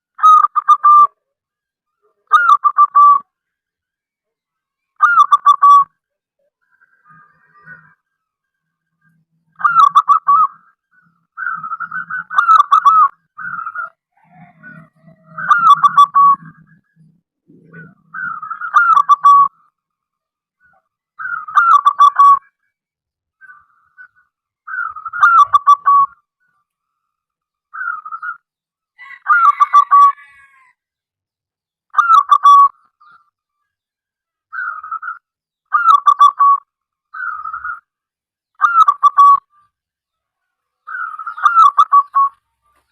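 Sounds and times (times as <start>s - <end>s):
dove cooing: 11.4s - 19.6s, 24.7s - 26.2s, 40.9s - 42.4s.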